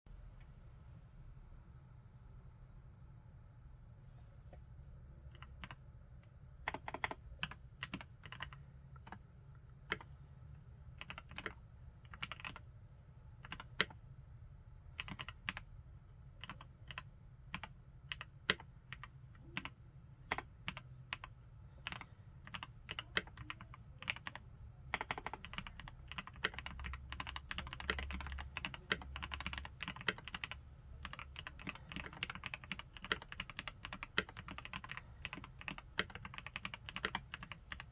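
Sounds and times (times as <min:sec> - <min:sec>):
mechanical keyboard typing: 0:05.3 - 0:05.8, 0:06.7 - 0:09.2, 0:09.8 - 0:10.1, 0:11.0 - 0:12.6, 0:13.4 - 0:14.0, 0:15.0 - 0:15.7, 0:16.4 - 0:37.9.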